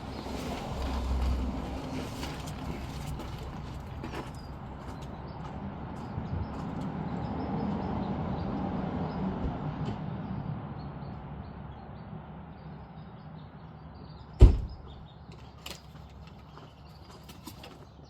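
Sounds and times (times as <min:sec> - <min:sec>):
door shutting with heavy thump: 0:14.4 - 0:14.8.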